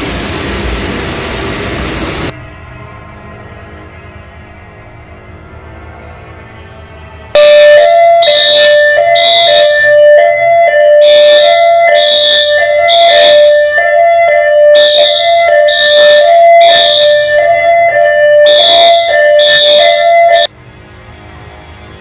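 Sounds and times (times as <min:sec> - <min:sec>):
electronic alarm two alternating tones: 0:07.4 - 0:20.5.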